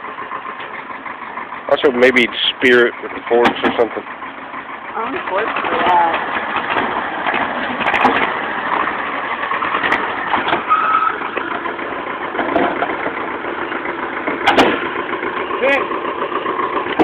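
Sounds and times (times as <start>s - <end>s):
tractor engine running: 0.0s - 17.0s
sharp knocks: 14.4s - 15.0s.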